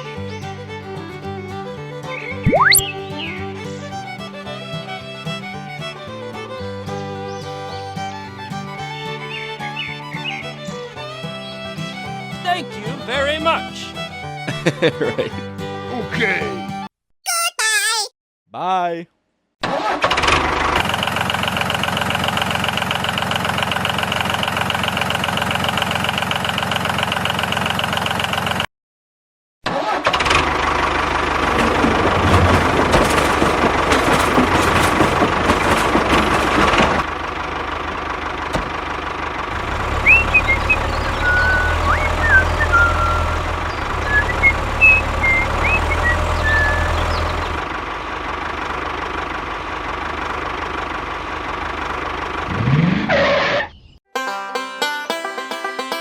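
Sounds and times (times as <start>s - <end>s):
short high chirps: 2.3s - 3.4s, 40.0s - 43.4s
vehicle engine running: 2.9s - 14.4s, 20.4s - 28.6s, 30.4s - 53.1s.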